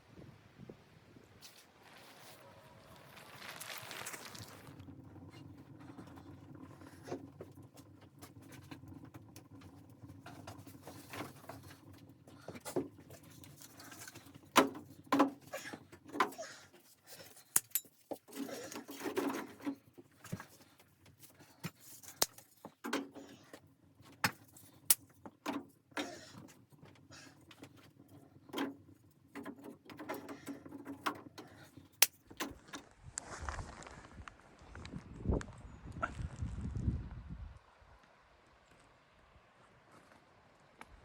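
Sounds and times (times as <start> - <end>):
objects being handled: 3.2 - 32.8.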